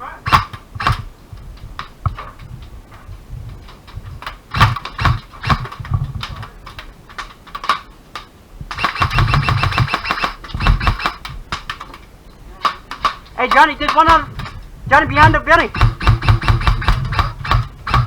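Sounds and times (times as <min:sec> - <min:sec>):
airsoft guns firing: 0:00.3 - 0:01.1, 0:04.5 - 0:05.8, 0:08.7 - 0:11.8, 0:12.6 - 0:14.3, 0:15.2 - 0:18.0.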